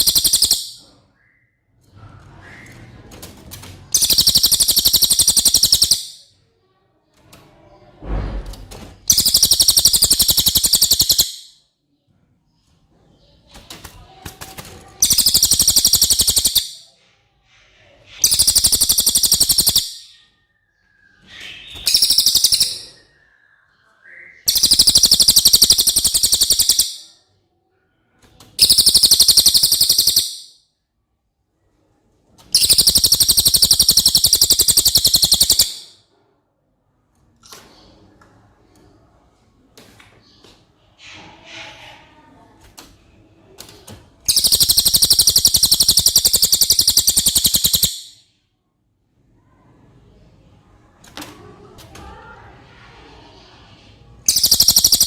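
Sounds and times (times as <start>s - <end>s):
high rapid buzzy bird trill: 0.0s - 0.8s, 4.0s - 6.2s, 9.1s - 11.5s, 14.5s - 16.8s, 18.2s - 20.1s, 21.4s - 23.0s, 24.4s - 27.1s, 28.6s - 30.6s, 32.6s - 35.9s, 44.3s - 48.2s, 54.3s - 55.0s.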